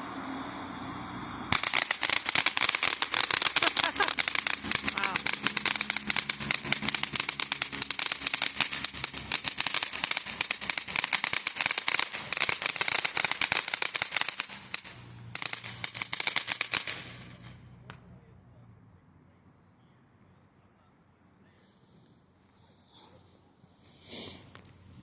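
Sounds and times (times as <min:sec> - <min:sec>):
firework crackling: 0:00.0 - 0:18.0.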